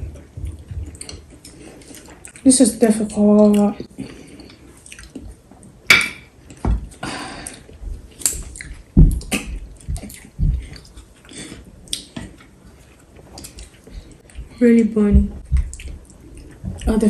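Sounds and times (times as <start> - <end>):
chewing: 0.1 - 2.5, 3.4 - 5.8, 6.4 - 14.6, 15.4 - 17.0
low thumps: 7.8 - 10.8, 13.9 - 17.0.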